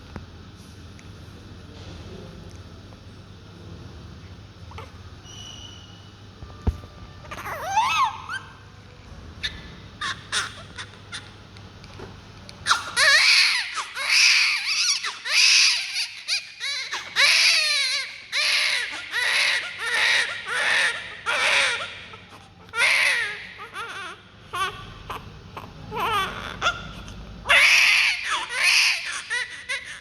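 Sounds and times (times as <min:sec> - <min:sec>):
newborn baby crying: 0:07.3 - 0:08.6, 0:10.0 - 0:11.4, 0:12.7 - 0:30.0.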